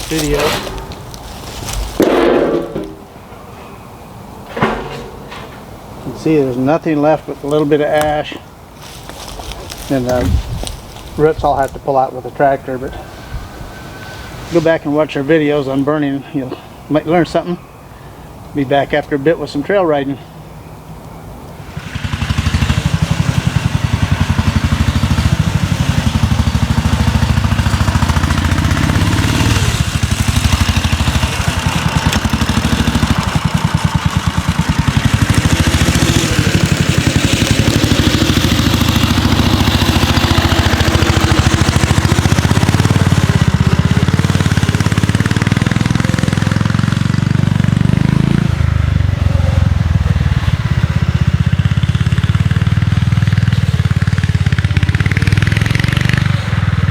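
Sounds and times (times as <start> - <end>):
scooter engine running: 21.7 - 56.9.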